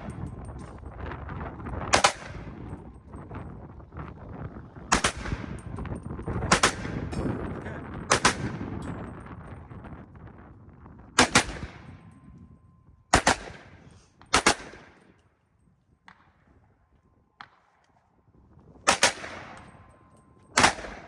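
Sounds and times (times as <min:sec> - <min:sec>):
gunshots with echo: 0:01.9 - 0:02.6, 0:04.9 - 0:05.8, 0:06.4 - 0:07.4, 0:08.0 - 0:08.8, 0:11.2 - 0:12.0, 0:13.1 - 0:15.0, 0:18.9 - 0:19.7, 0:20.6 - 0:21.0.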